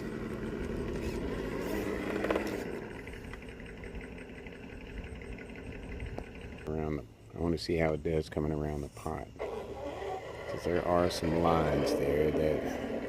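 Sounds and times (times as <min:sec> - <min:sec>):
electric motor and gears whining: 0:00.0 - 0:06.9, 0:09.1 - 0:13.0.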